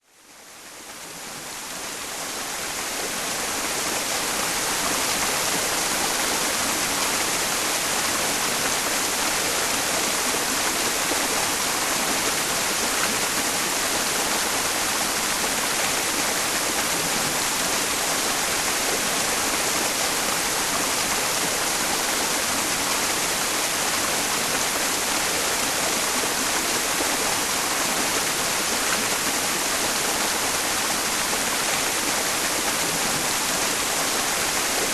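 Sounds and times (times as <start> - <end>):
mountain stream running: 0.2 - 34.9.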